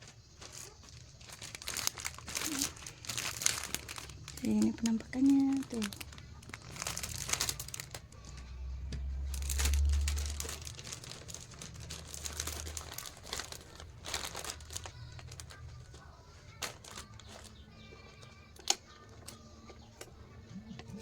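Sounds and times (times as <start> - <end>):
plastic packets crinkling: 0.0 - 8.5, 9.1 - 20.0
low rumble: 6.7 - 14.7.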